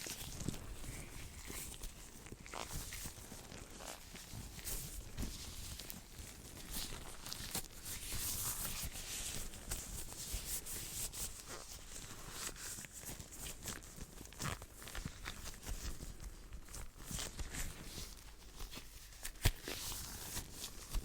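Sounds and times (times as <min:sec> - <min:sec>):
hands rubbing against microphone: 0:00.0 - 0:13.5.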